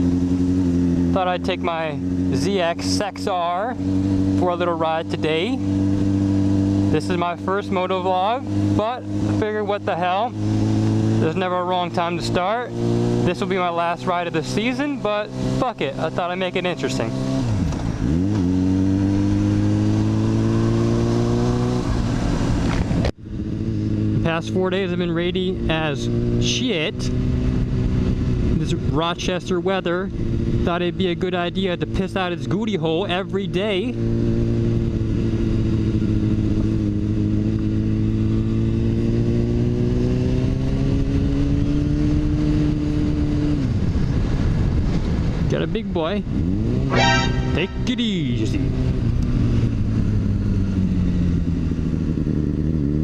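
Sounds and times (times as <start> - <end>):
motorcycle engine revving: 0.0 - 53.0
wind noise: 40.7 - 48.0.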